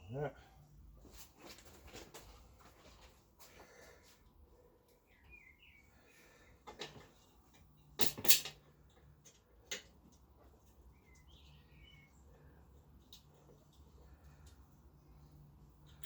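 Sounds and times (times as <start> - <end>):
clicks and knocks of tools: 6.6 - 10.8.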